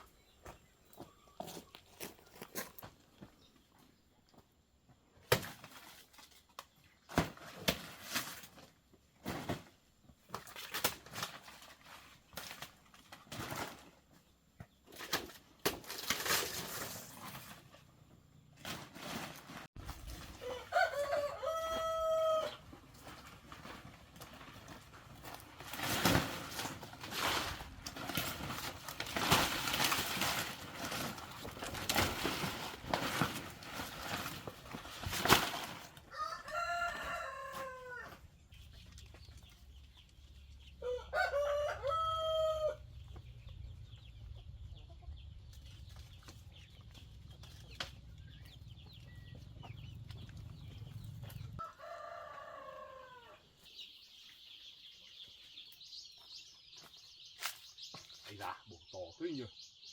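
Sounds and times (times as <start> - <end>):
rooster crowing: 20.4 - 22.6, 36.1 - 38.2, 40.8 - 42.8, 51.6 - 53.4
rustling: 22.9 - 36.0.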